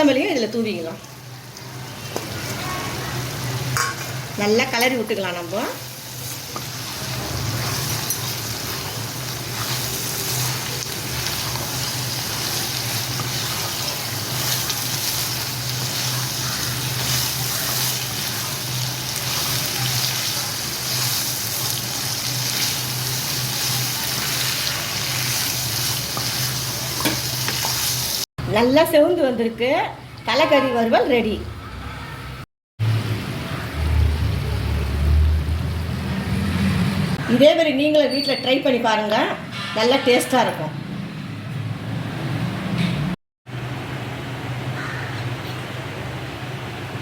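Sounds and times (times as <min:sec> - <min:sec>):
meat sizzling in oil: 0:00.1 - 0:28.3.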